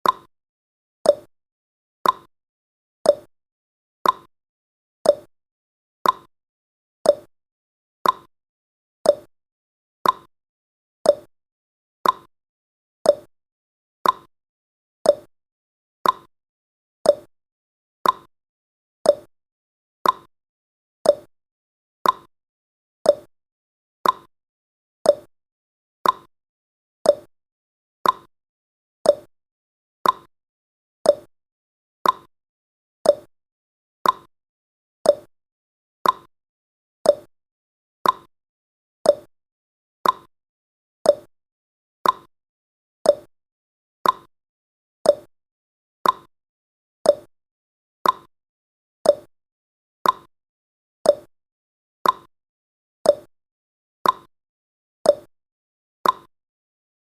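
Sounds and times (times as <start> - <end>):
clock ticking: 36.0 - 36.3, 40.0 - 40.3, 44.0 - 44.3, 56.0 - 56.3.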